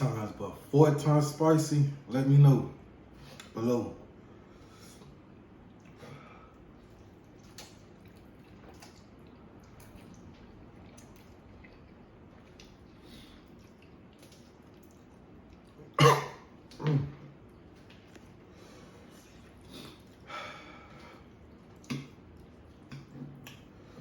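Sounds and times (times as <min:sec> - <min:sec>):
loud coughs: 0:16.0 - 0:17.2.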